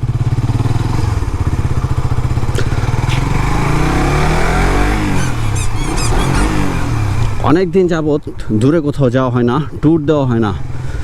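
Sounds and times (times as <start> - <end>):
motorcycle engine accelerating: 0.0 - 8.1.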